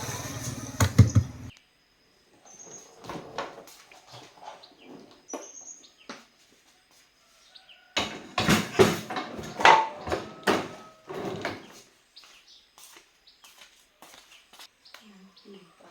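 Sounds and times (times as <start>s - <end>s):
bird chirps: 0.0s - 1.5s.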